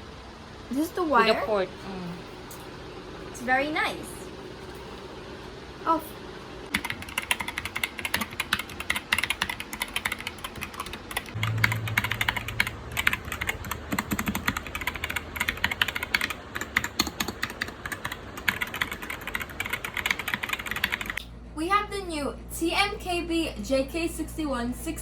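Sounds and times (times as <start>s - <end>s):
mechanical keyboard typing: 6.7s - 21.2s
low hum: 11.3s - 16.6s.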